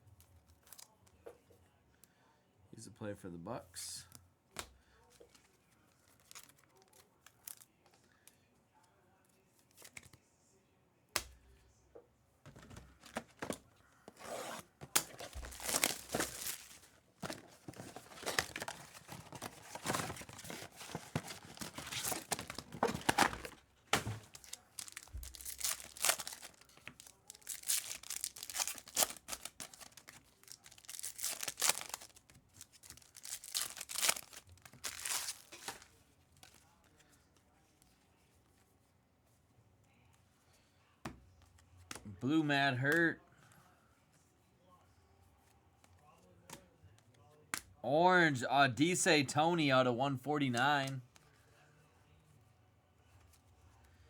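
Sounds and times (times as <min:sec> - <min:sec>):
card pack wrappers tearing: 0:06.1 - 0:07.7, 0:12.6 - 0:36.6.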